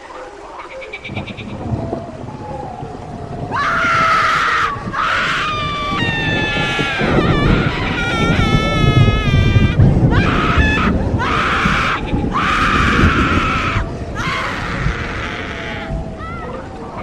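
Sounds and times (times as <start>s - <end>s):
rising and falling wail: 1.6s - 17.0s
shrill wavering scream: 3.5s - 16.7s
raspy screams: 3.5s - 16.8s.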